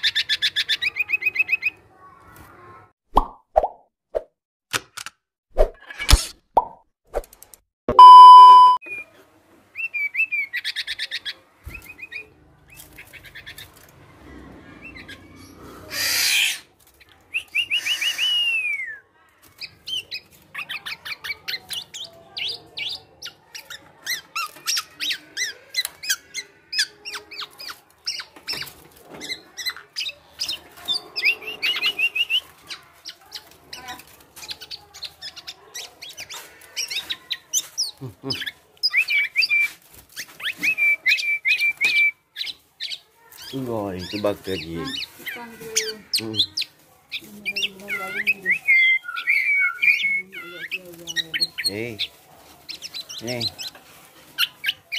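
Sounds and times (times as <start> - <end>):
bird calling: 19.9 - 53.8.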